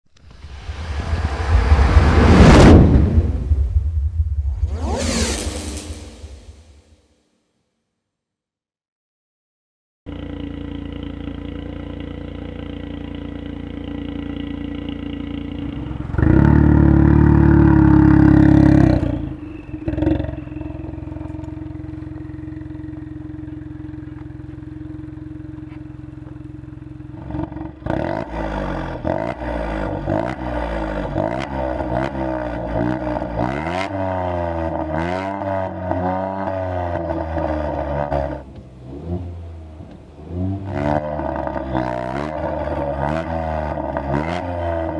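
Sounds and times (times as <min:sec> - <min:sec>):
car engine idling and revving: 0:10.1 - 0:44.9.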